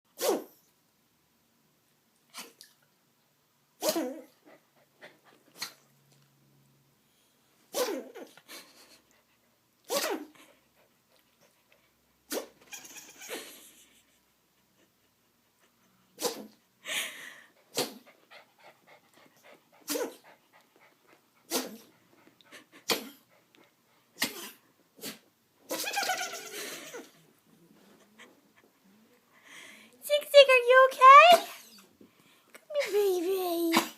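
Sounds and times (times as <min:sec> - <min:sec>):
puppy sneezing: 0:00.2 - 0:00.6, 0:02.3 - 0:02.6, 0:03.8 - 0:04.4, 0:05.6 - 0:05.8, 0:07.7 - 0:08.4, 0:09.9 - 0:10.5, 0:12.3 - 0:13.5, 0:16.2 - 0:16.6, 0:17.7 - 0:18.1, 0:19.8 - 0:20.2, 0:21.5 - 0:21.9, 0:22.8 - 0:23.2, 0:24.2 - 0:27.1, 0:31.3 - 0:31.9, 0:33.7 - 0:33.9.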